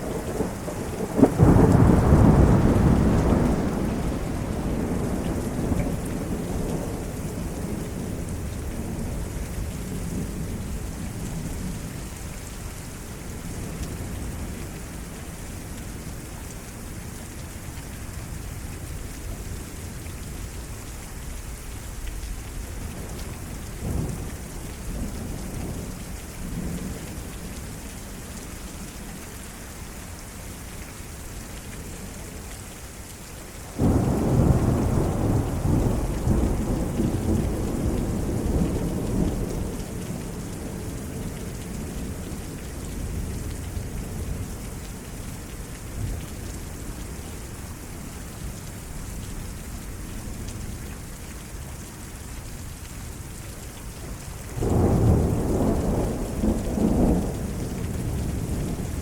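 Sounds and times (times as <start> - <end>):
thunderclap and rumble: 0.0 - 11.8, 33.8 - 44.6, 54.5 - 59.0
heavy rain: 0.0 - 59.0.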